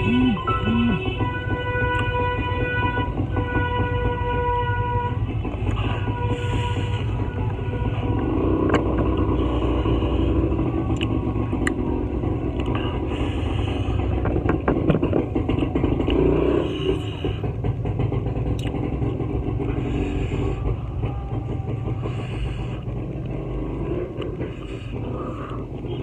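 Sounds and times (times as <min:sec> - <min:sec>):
low rumble of motor traffic: 0:00.0 - 0:26.0.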